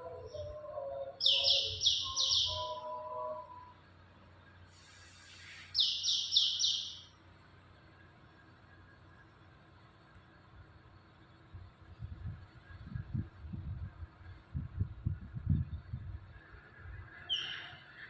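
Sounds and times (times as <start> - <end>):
lower whistled bird notes: 0.0 - 3.8, 5.2 - 7.1, 17.2 - 18.0
high bird chirps: 0.2 - 3.6, 5.3 - 7.1, 17.3 - 17.8
short hiss: 4.6 - 6.0.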